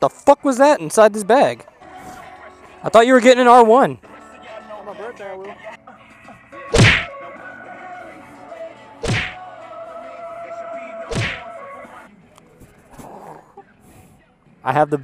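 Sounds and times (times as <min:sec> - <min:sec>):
heavy impact hits: 0:06.8 - 0:07.1.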